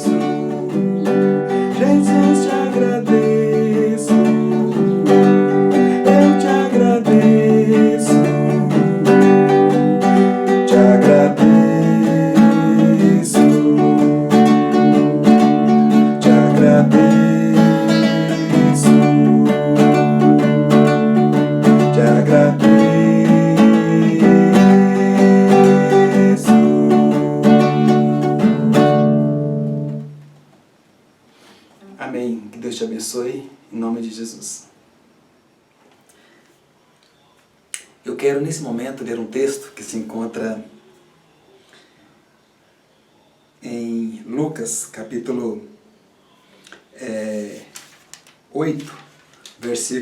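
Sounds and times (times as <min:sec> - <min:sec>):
acoustic guitar strumming: 0:00.0 - 0:30.5.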